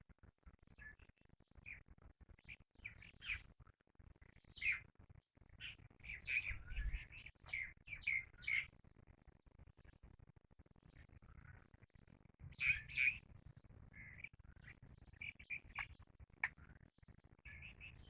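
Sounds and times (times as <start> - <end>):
birds chirping: 6.2 - 8.6.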